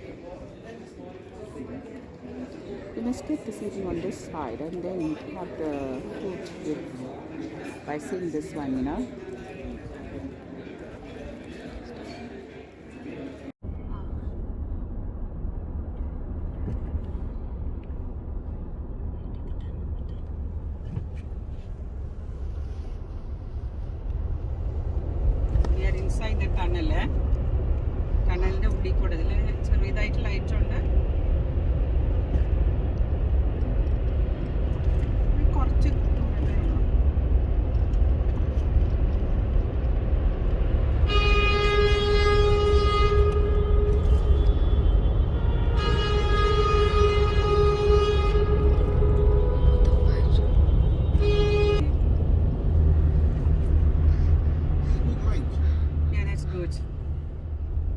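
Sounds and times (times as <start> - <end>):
car engine and tyres rumbling: 13.6 - 57.9
long horn-like tone: 40.9 - 52.0.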